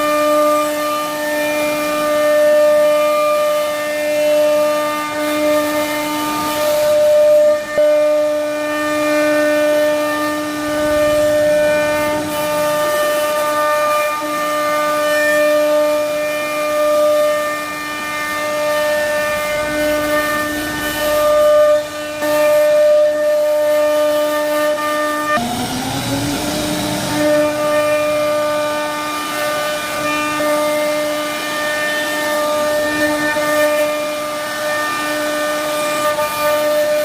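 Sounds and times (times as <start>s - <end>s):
router spindle whine: 0.0s - 37.0s
wood cutting hiss: 0.0s - 37.0s.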